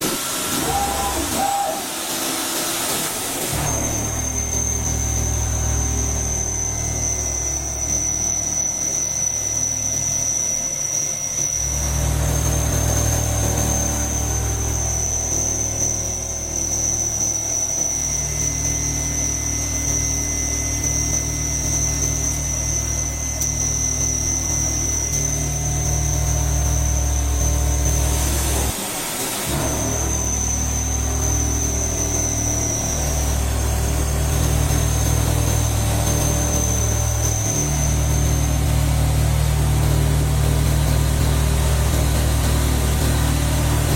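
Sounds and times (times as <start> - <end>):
milling machine whine: 0.0 - 43.9
low machine hum: 29.5 - 43.9.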